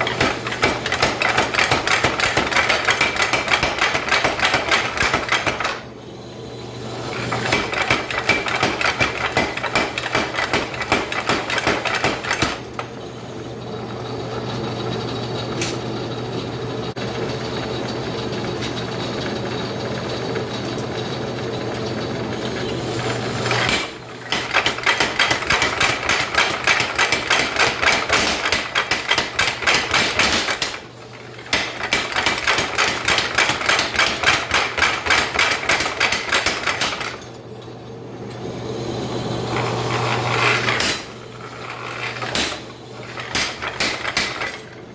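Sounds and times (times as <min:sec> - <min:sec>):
power hammer pounding: 0:00.0 - 0:05.8, 0:07.4 - 0:12.8, 0:23.7 - 0:37.3, 0:40.4 - 0:44.7
steady motor hum: 0:00.0 - 0:44.9.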